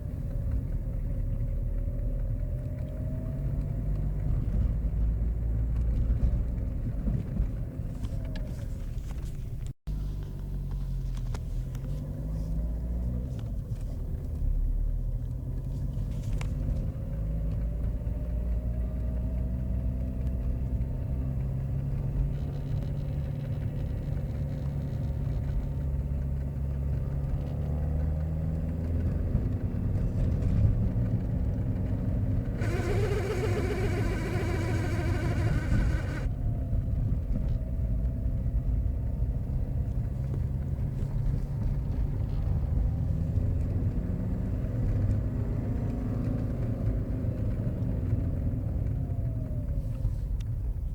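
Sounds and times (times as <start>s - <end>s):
car engine running: 29.0s - 37.1s.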